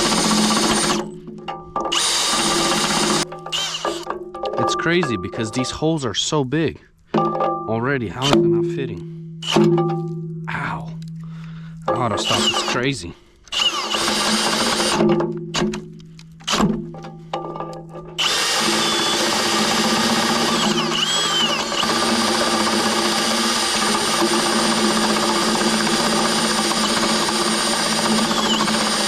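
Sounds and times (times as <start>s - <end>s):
cordless drill boring into steel: 0.0s - 1.1s, 1.9s - 4.1s, 12.1s - 15.0s, 18.2s - 29.0s.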